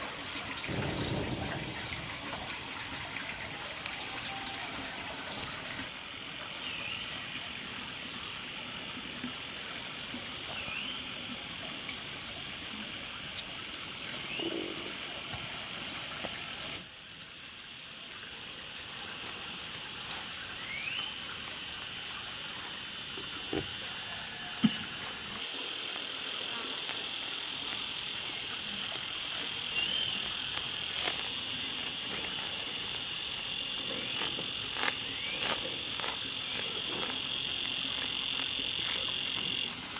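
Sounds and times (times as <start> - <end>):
high-pitched insect drone: 0.7 - 2.1, 25.2 - 39.9.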